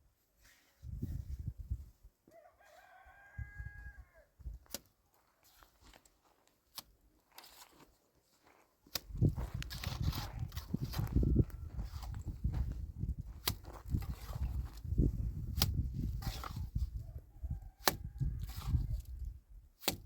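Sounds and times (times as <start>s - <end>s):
rooster crowing: 2.3s - 4.3s.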